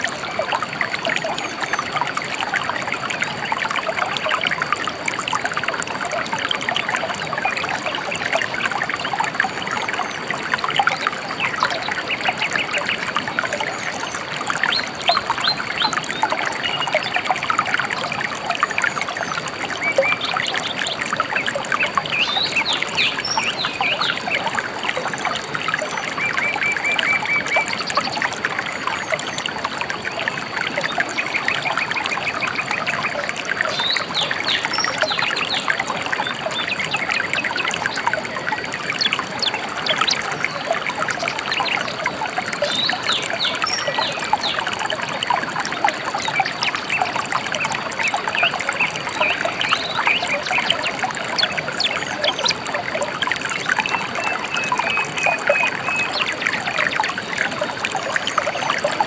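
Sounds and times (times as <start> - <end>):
river babbling: 0.0 - 59.0
small birds chirping: 18.5 - 29.5.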